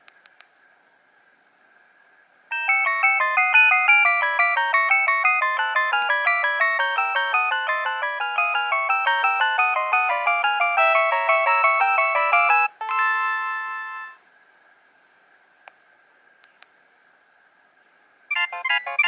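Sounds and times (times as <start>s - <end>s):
mobile phone ringtone melody: 2.5s - 14.2s, 18.3s - 19.0s.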